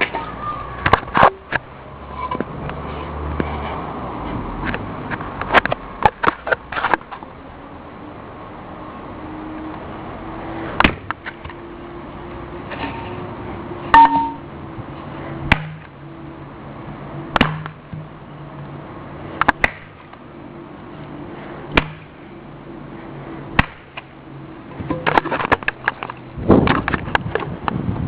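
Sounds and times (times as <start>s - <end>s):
blows struck on alarm clock: 13.9s - 14.4s.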